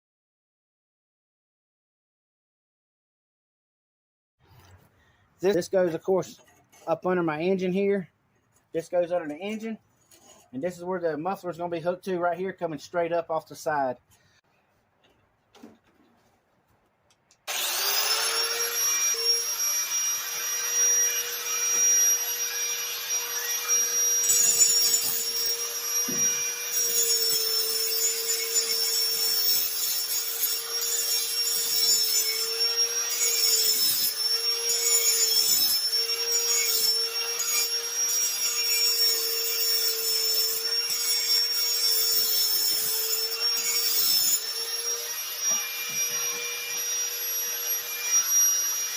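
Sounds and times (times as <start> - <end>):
electric grinder whining on metal: 17.5 - 48.9.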